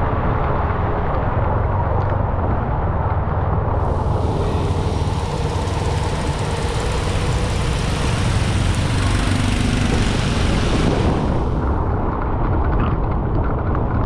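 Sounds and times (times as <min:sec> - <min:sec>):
low engine rumble: 0:03.6 - 0:13.3
rushing noise: 0:03.8 - 0:12.4.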